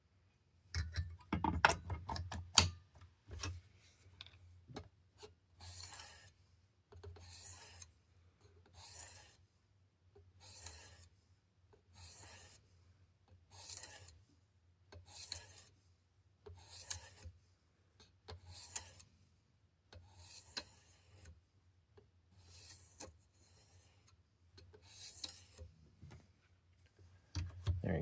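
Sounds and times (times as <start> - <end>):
knife scraping on sharpening stone: 5.6 - 6.2, 13.6 - 14.1.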